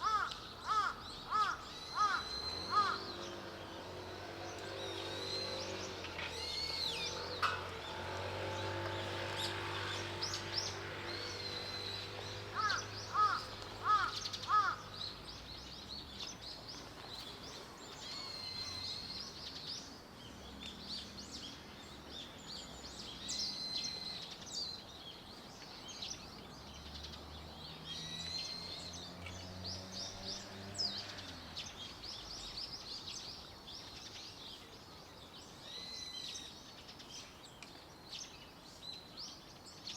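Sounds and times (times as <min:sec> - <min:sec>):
crow cawing: 0:00.0 - 0:03.0, 0:12.6 - 0:14.9
birds chirping: 0:00.0 - 0:39.9.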